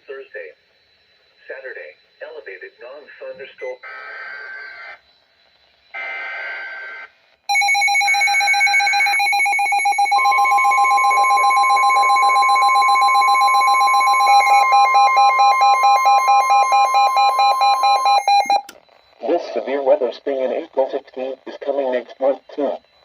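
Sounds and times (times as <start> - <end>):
steady warning tone: 0.0 - 23.0
buzzing data tones: 3.4 - 23.0
alarm beeping: 7.5 - 23.0.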